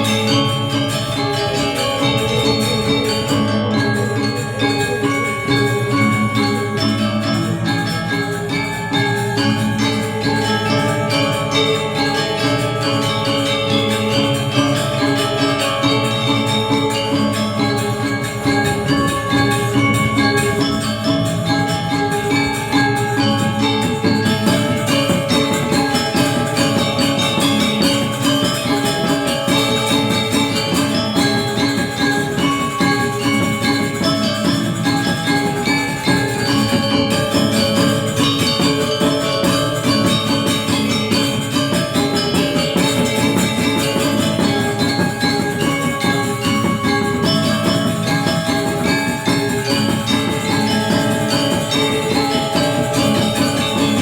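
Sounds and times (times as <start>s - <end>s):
gamelan metallophones and gongs: 0.0s - 54.0s.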